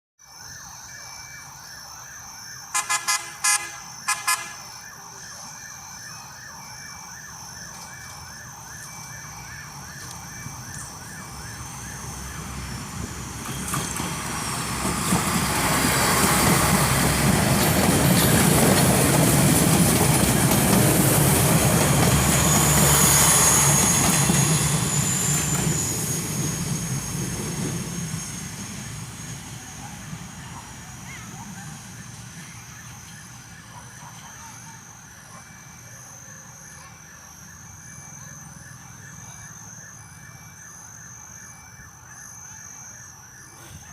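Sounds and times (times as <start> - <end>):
fast repeating warning tone: 0.3 - 43.9
light-rail train passing: 2.6 - 5.7, 6.3 - 43.9
short horn blasts: 2.7 - 4.7.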